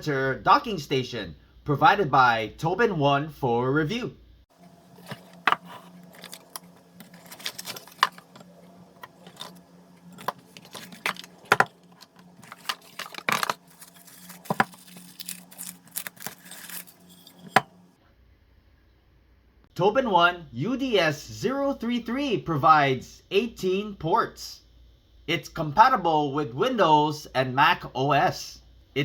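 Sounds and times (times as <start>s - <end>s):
faint steady hum: 0.0s - 29.0s
hard objects clattering: 4.6s - 17.8s.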